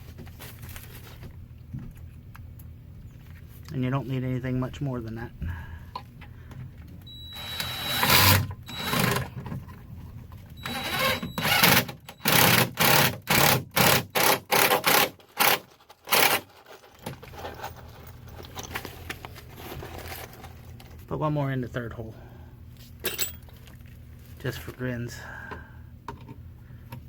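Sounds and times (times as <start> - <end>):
impact driver driving screws: 7.3 - 9.3, 10.6 - 16.5.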